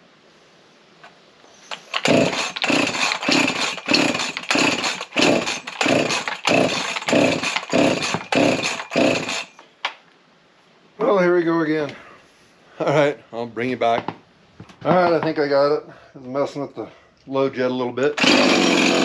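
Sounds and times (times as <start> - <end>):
chainsaw short bursts: 1.7 - 9.6, 18.2 - 19.0.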